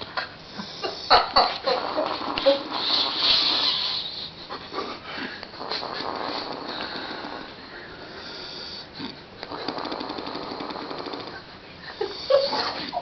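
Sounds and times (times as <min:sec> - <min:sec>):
man snoring: 0:08.2 - 0:11.3.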